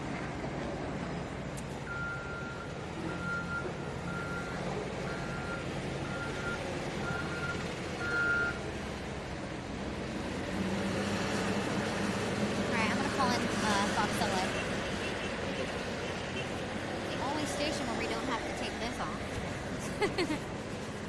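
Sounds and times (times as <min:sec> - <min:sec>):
engine humming: 0:00.0 - 0:21.0
vehicle reversing alarm beeping: 0:01.8 - 0:08.6.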